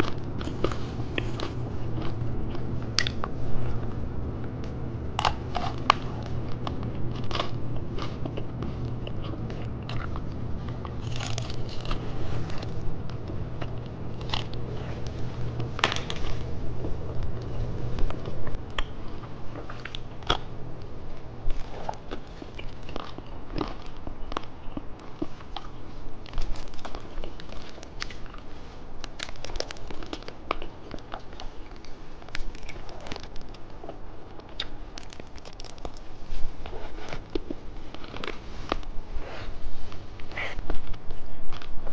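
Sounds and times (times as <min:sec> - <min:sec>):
chewing hard candy: 0:00.0 - 0:41.9
low hum: 0:00.0 - 0:41.9.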